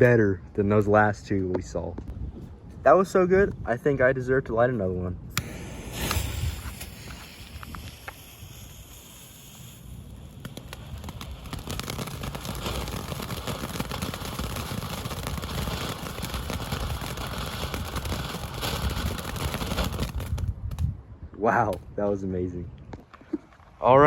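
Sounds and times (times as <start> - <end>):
firework fountain hissing and crackling: 5.3 - 20.5.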